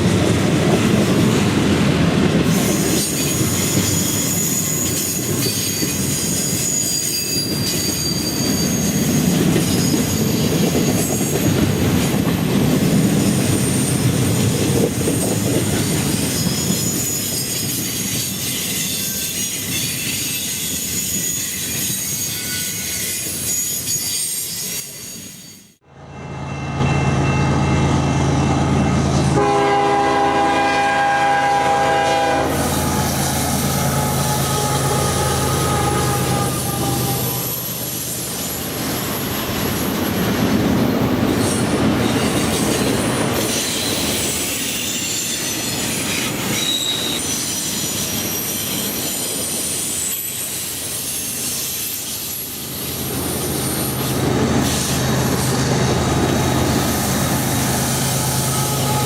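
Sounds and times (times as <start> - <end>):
rail cars rumbling: 0.0 - 59.0
high-pitched wheel squeal: 2.5 - 11.3, 16.3 - 25.7, 32.1 - 40.2, 43.4 - 52.8
diesel locomotive engines running: 25.9 - 59.0
train horn blast: 29.3 - 37.6, 58.1 - 59.0.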